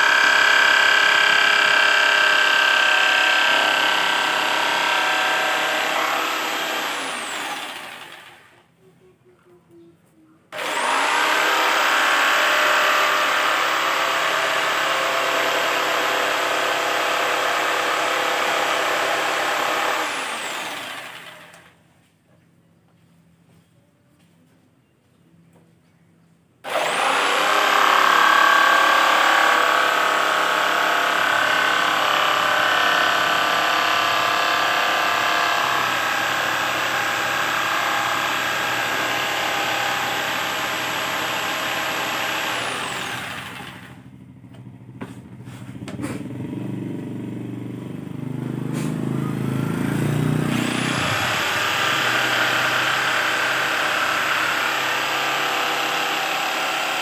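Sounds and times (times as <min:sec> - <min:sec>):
electric jigsaw cutting acrylic: 0:00.0 - 0:08.6, 0:10.5 - 0:21.8, 0:26.6 - 0:44.0, 0:49.7 - 0:57.0.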